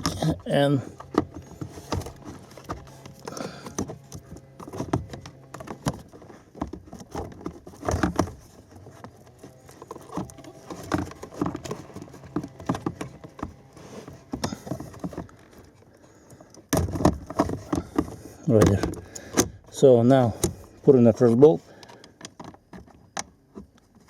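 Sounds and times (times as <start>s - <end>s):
plastic scraping: 0.0s - 24.0s
plastic knocks and clicks: 1.0s - 9.2s, 9.8s - 13.6s, 16.6s - 19.6s.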